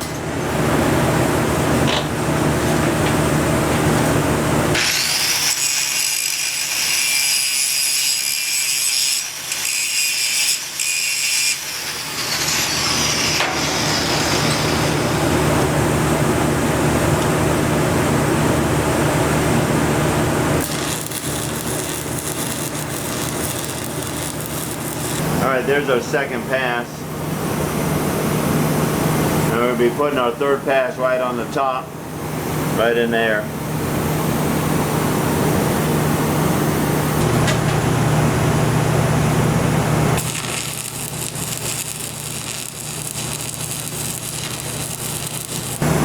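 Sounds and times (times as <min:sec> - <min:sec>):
welding arc crackling and hissing: 0:04.7 - 0:15.7, 0:20.4 - 0:26.7, 0:39.4 - 0:46.0.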